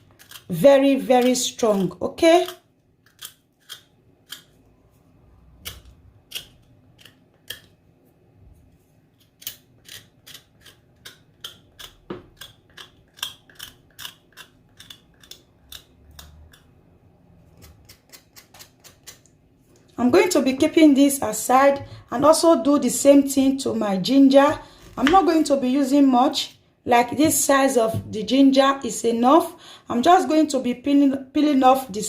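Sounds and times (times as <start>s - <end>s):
nut skin scraping clicks: 0.0s - 4.5s, 5.6s - 7.8s, 9.2s - 16.7s.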